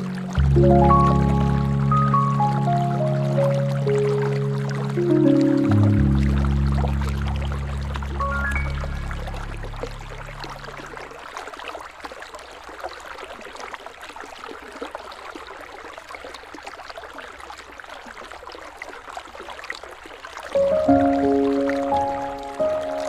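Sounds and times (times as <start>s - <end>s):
music: 0.0s - 10.9s, 20.6s - 23.0s
river water flowing and rippling: 0.0s - 23.0s.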